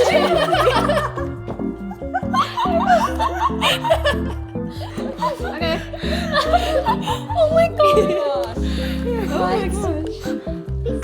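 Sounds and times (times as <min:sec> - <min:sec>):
laughter: 0:00.0 - 0:01.3, 0:02.1 - 0:08.4
background music: 0:00.0 - 0:11.0.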